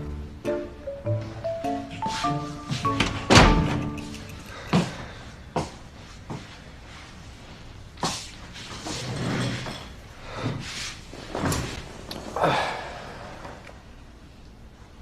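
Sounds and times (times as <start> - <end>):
scuffing noise: 4.5 - 8.8.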